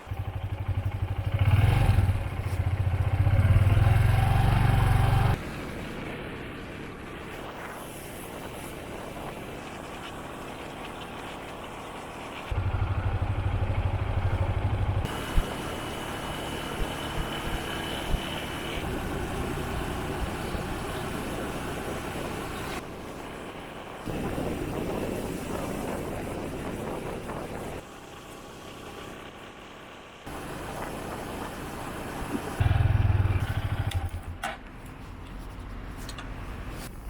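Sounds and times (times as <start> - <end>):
motorcycle engine running: 0.0 - 7.0, 11.2 - 22.8, 24.1 - 34.4.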